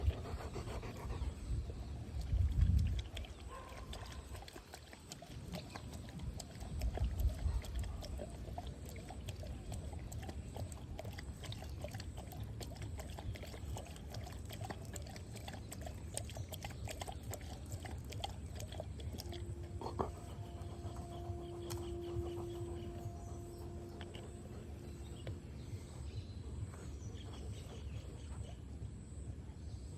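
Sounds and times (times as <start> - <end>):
dog panting heavily: 0.0 - 1.8, 9.7 - 25.3
dog lapping water: 0.0 - 29.2.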